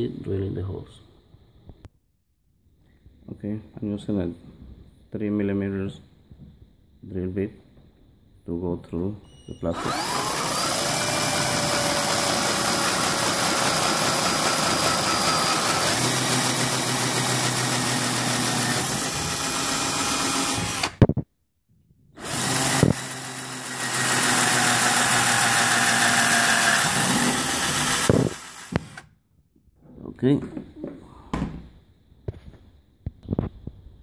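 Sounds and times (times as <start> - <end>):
power drill boring through plastic: 9.7 - 21.1, 22.2 - 29.1.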